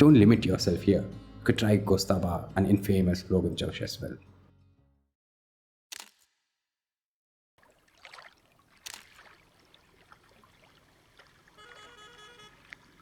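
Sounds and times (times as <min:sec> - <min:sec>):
soft paddle splashes: 0:07.6 - 0:13.0
water lapping: 0:07.6 - 0:13.0.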